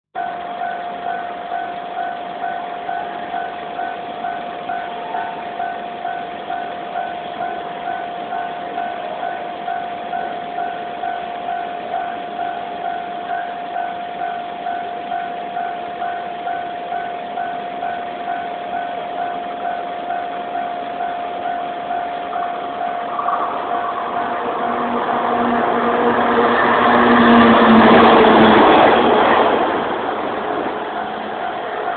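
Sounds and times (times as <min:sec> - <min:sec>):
level-crossing warning bell: 0:00.2 - 0:31.9.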